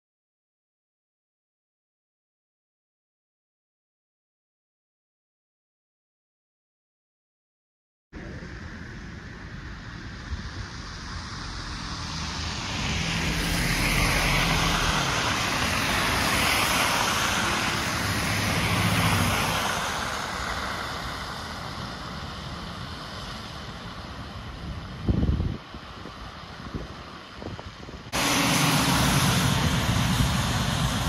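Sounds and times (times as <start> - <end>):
vehicle passing by: 10.9 - 23.6, 28.1 - 31.0.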